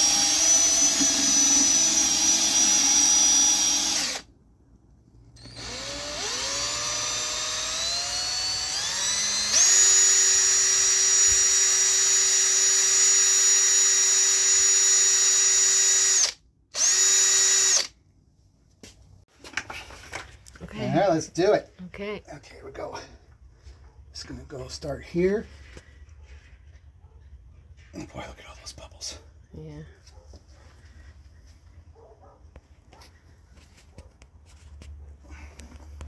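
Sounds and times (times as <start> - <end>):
electric drill whining: 0.0 - 4.3, 5.4 - 18.0.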